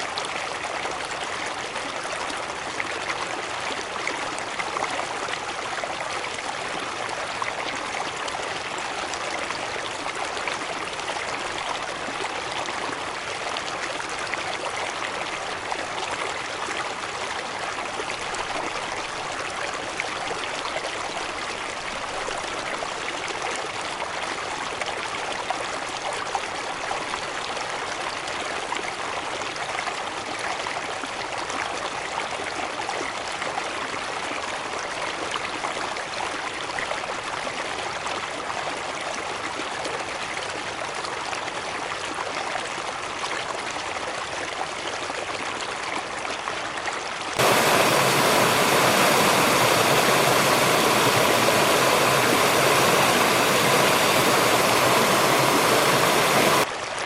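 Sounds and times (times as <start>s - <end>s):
waterfall rushing: 47.4s - 56.7s.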